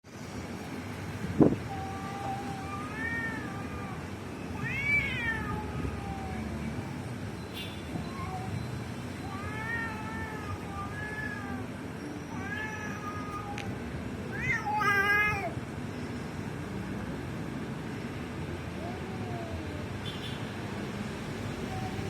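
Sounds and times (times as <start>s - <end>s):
cats yowling in a fight: 1.7s - 6.9s, 9.2s - 15.6s, 18.8s - 19.9s.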